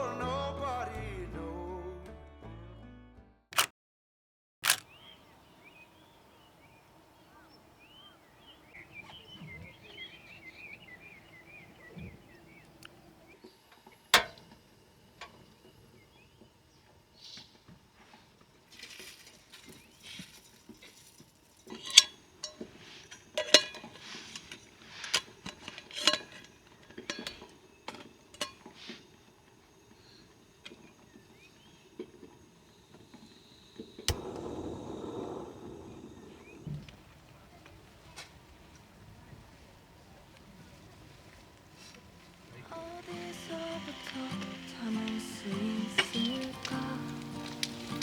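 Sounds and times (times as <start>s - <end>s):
rustling: 17.3s - 29.2s, 40.4s - 48.0s
metal cookware clinking: 21.6s - 28.8s.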